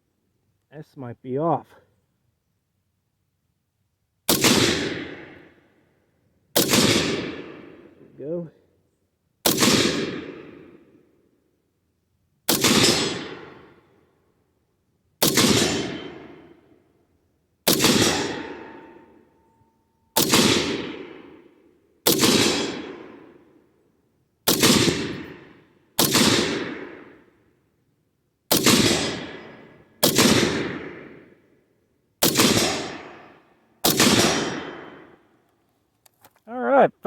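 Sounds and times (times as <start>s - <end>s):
rifle shots echoing: 4.3s - 5.5s, 6.6s - 7.9s, 9.4s - 11.0s, 12.5s - 13.8s, 15.2s - 16.7s, 17.6s - 19.6s, 20.2s - 23.6s, 24.5s - 27.4s, 28.5s - 31.3s, 32.2s - 35.2s.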